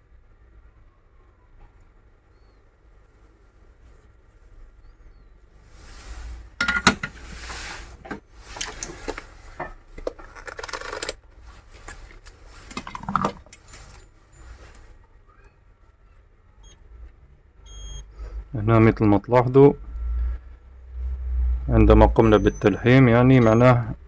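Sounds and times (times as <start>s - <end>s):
metal tools clinking and scraping: 6.6s - 7.2s.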